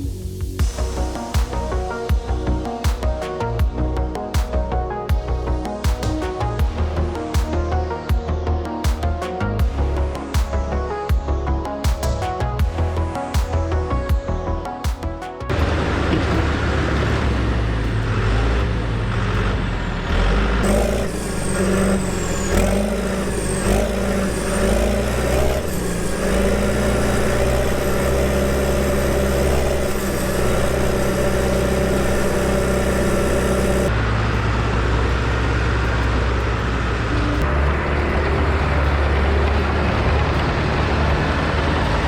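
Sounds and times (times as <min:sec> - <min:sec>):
dozer diesel engine running: 0:15.5 - 0:42.0
high wavering whine: 0:20.6 - 0:42.0.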